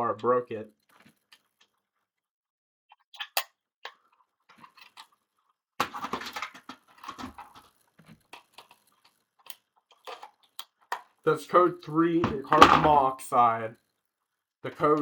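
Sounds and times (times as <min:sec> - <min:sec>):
rustling and scraping: 0:00.8 - 0:02.0, 0:04.5 - 0:11.2.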